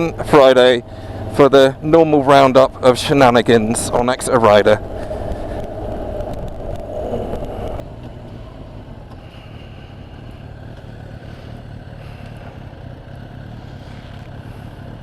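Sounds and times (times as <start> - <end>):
motorcycle engine running: 0.0 - 15.0
wind noise: 3.5 - 7.9.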